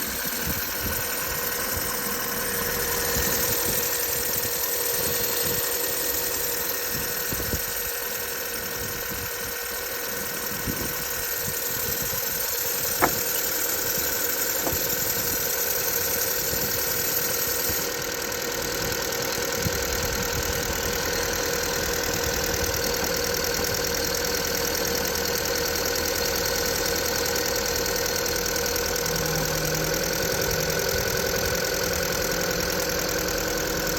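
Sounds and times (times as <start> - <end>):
car engine idling: 0.0 - 33.9
sharp click: 12.8 - 15.0.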